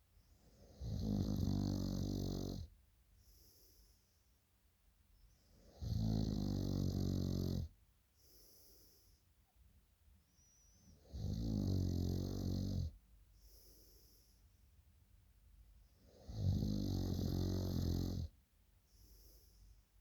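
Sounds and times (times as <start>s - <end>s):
person snoring loudly: 0.7s - 2.7s, 5.8s - 7.7s, 16.3s - 18.3s
soft breaths out: 13.3s - 14.7s, 18.8s - 20.0s.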